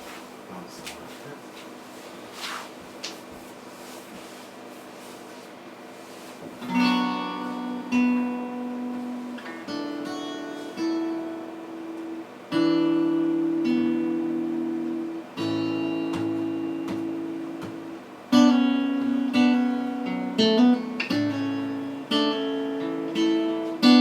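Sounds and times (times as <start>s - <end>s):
acoustic guitar strummed chords: 6.6s - 24.0s.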